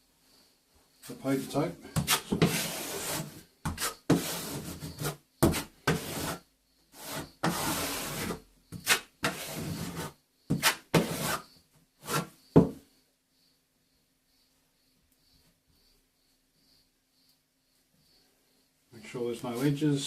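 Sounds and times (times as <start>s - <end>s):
plastering knife scraping: 1.1s - 12.4s.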